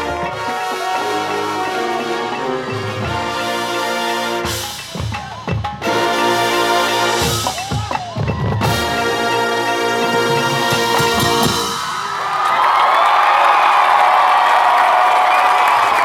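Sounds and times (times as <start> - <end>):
marching band playing: 0.0 - 12.2
drum hits: 7.0 - 9.2, 10.6 - 12.1.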